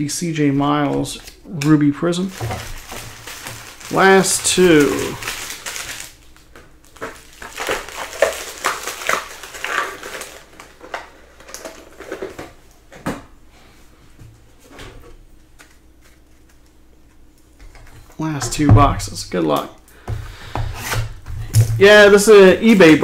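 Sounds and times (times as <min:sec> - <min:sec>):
plastic wrapping tearing and crinkling: 0:01.2 - 0:12.4.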